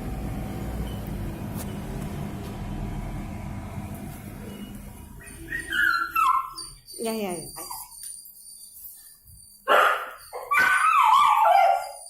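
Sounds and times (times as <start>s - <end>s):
bus engine low rumble: 0.0s - 5.2s.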